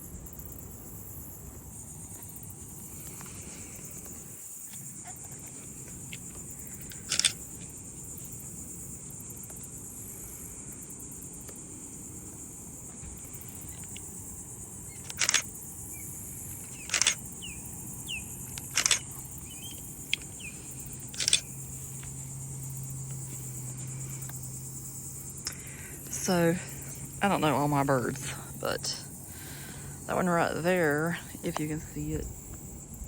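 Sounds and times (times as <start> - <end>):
insect chorus: 0.0 - 33.0
faint chirps: 14.8 - 27.2.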